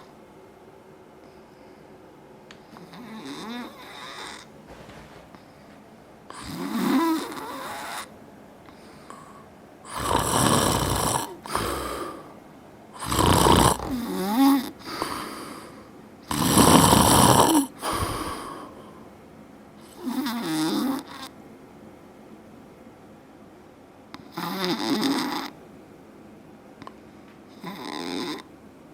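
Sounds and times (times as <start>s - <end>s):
quiet breathing: 1.2s - 16.0s, 16.7s - 19.2s
man snoring: 2.9s - 4.5s, 6.4s - 8.1s, 9.9s - 12.4s, 13.0s - 15.7s, 16.3s - 18.8s, 20.0s - 21.3s, 24.4s - 25.5s, 27.6s - 28.5s.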